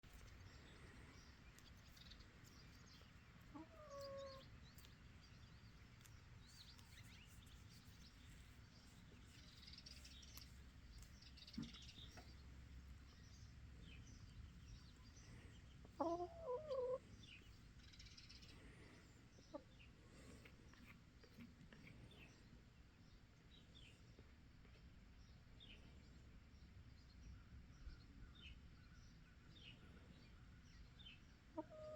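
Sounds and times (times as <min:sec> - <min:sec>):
chickens calling: 0:00.1 - 0:12.4, 0:14.8 - 0:21.0, 0:31.4 - 0:31.9.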